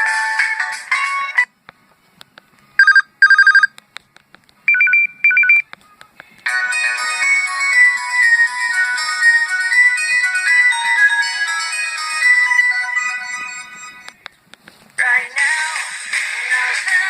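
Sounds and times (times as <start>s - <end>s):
melodic phone ringtone: 2.8s - 3.7s, 4.7s - 5.6s, 6.5s - 14.1s
trilling phone ring: 2.8s - 3.7s.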